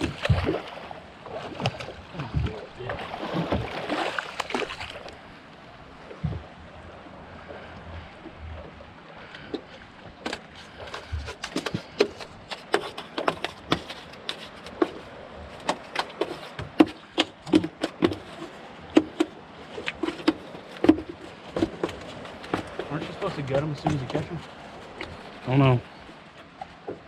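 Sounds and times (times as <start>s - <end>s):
sharp knocks and taps: 10.2s - 15.0s, 15.6s - 18.4s, 19.0s - 23.2s.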